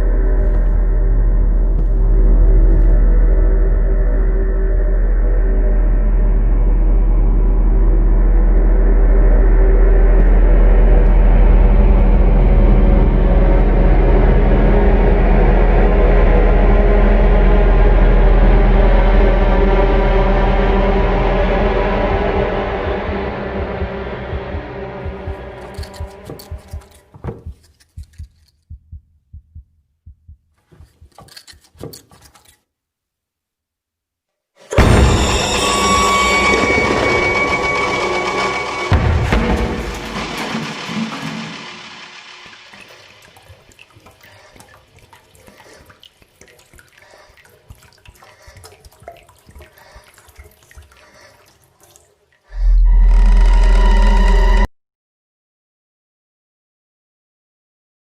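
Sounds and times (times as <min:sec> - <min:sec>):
heartbeat thumps: 0:20.9 - 0:31.2
water dripping and trickling: 0:42.4 - 0:52.5.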